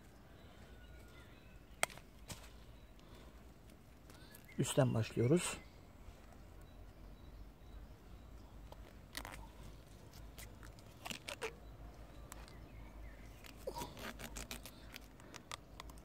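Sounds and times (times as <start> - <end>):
plastic tape crinkling: 8.7 - 11.6, 13.2 - 16.0
brief squeaks: 10.1 - 11.7, 13.4 - 15.0.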